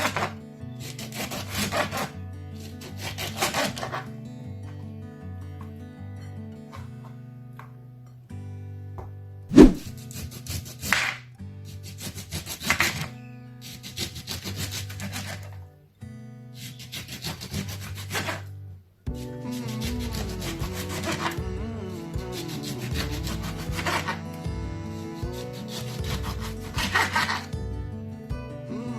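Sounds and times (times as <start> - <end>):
soft background music: 19.1 - 28.9.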